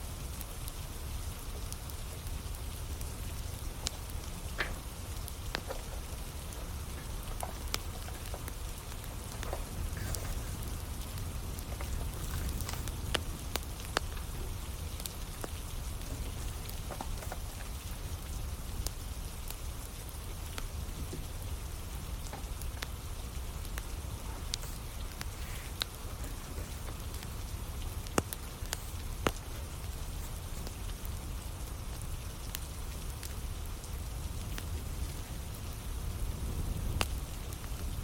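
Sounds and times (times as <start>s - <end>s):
steady rain falling: 0.0s - 38.0s
wood fire crackling: 0.0s - 38.0s.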